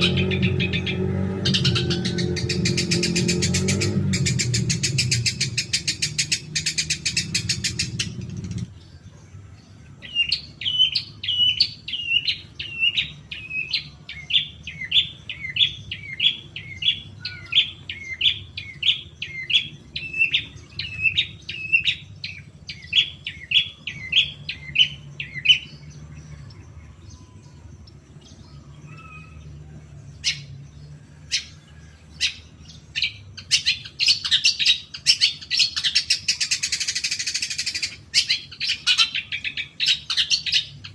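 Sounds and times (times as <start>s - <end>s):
dense bird chattering: 0.0s - 9.1s, 10.0s - 29.4s, 32.2s - 40.9s
low steady hum: 0.0s - 34.0s.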